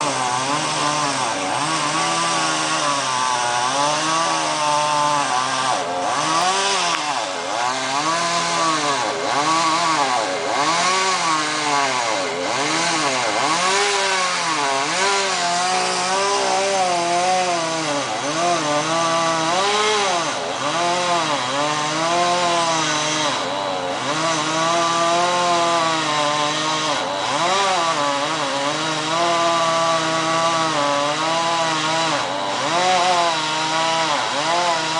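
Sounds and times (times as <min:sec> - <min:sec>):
chainsaw cutting wood: 0:00.0 - 0:34.9.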